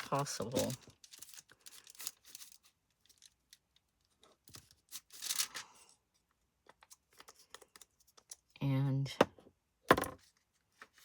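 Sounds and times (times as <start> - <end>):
paper rustling: 0.0 - 3.4, 4.4 - 5.9.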